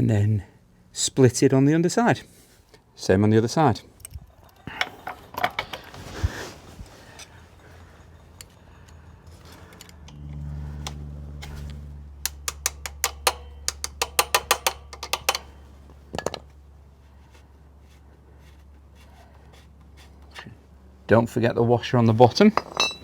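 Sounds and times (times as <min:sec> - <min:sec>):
low hum: 0:06.0 - 0:18.2
pliers clicking on metal pins: 0:12.2 - 0:15.6.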